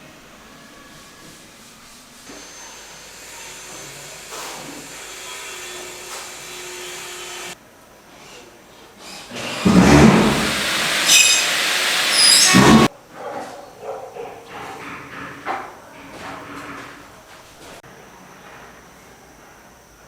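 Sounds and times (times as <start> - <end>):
construction site noise: 9.0 - 12.9
power tool cutting: 9.3 - 12.9
high wavering squeals: 10.2 - 12.9.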